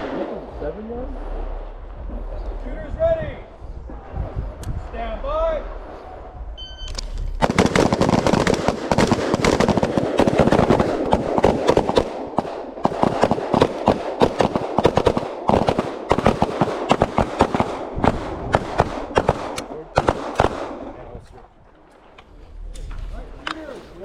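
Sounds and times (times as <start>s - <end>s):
rapid overlapping gunshots: 7.4s - 21.4s.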